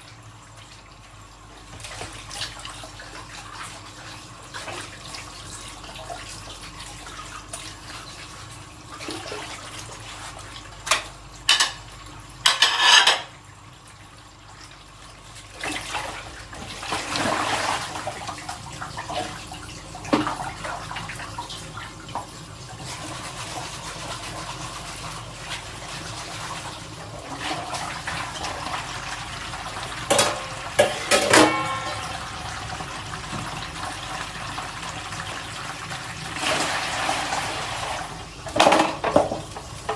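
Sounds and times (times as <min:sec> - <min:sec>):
tap water running: 0:00.0 - 0:39.9
dishes clattering: 0:10.9 - 0:11.8, 0:12.4 - 0:13.3, 0:30.1 - 0:32.2
dishes and utensils clinking: 0:12.5 - 0:13.3, 0:30.1 - 0:32.2.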